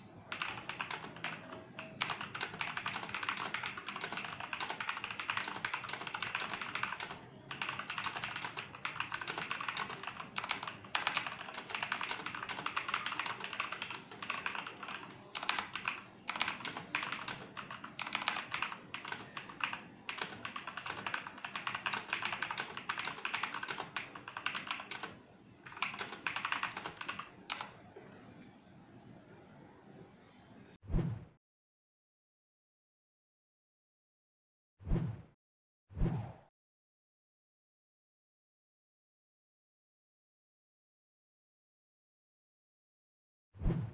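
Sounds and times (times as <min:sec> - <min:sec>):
mechanical keyboard typing: 0:00.3 - 0:27.8.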